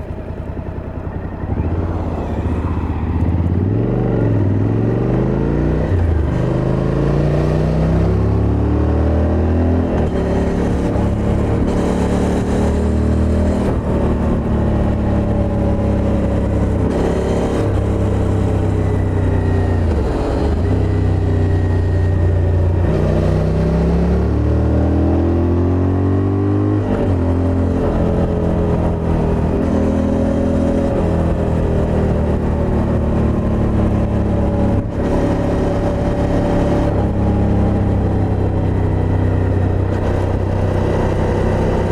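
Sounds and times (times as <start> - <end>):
motorcycle engine revving: 0.0 - 41.9.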